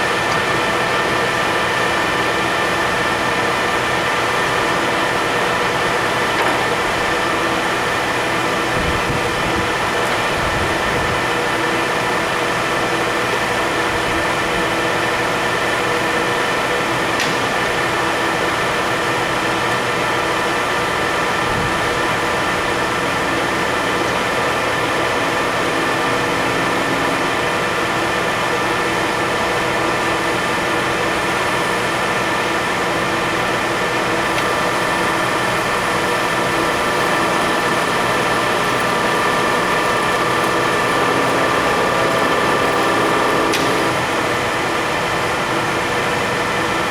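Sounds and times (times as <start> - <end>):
lathe gear whine: 0.0 - 46.9
machine hum: 31.3 - 45.1.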